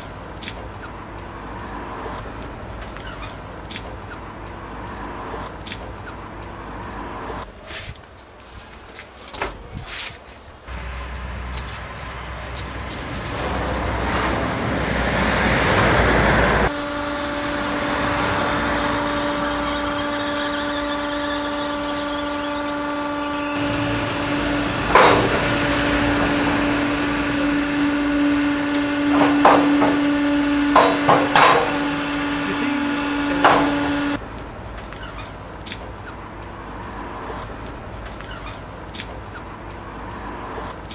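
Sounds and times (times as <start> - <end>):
machinery knocks and clanks: 10.7 - 14.8, 23.4 - 36.0
baler machinery humming: 10.7 - 34.8.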